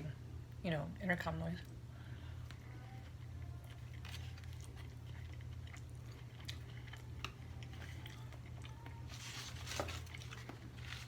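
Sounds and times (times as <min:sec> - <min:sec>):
steady low hum: 0:00.0 - 0:11.0
person chewing food: 0:02.4 - 0:11.0.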